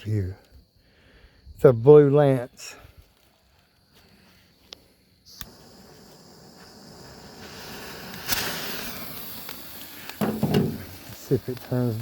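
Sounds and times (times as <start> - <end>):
firework burning with a hiss: 3.9 - 12.0
sharp pop: 8.1 - 11.0.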